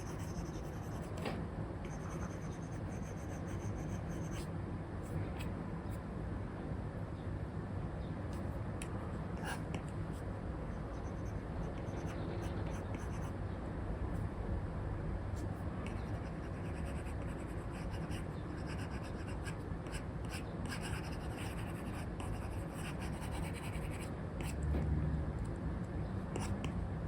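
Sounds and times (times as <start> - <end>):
stylus scratching on tablet screen: 0.0 - 1.2, 1.9 - 4.5, 10.8 - 13.3, 15.8 - 24.1
low background noise: 0.0 - 27.0.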